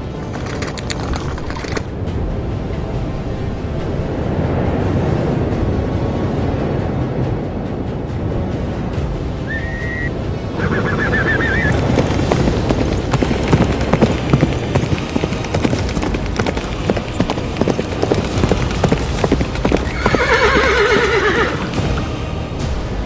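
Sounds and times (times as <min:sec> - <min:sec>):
horse hooves clip-clopping: 0:00.0 - 0:03.5, 0:08.2 - 0:22.8
horse whinnying: 0:09.5 - 0:11.9, 0:19.8 - 0:21.8.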